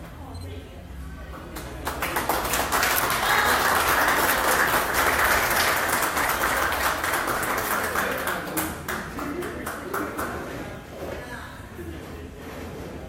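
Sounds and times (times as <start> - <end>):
audience applauding: 1.6 - 10.4.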